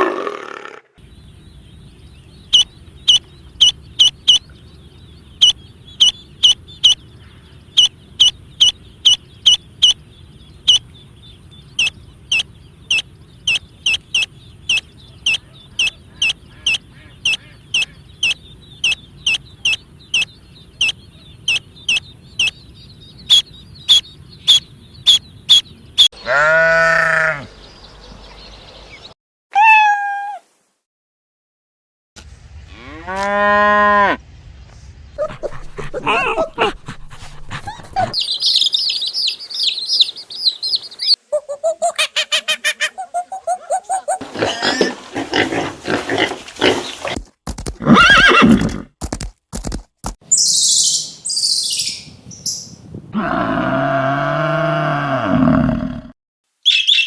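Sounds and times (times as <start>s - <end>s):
loud bleat: 26.2s - 27.5s, 53.2s - 56.1s.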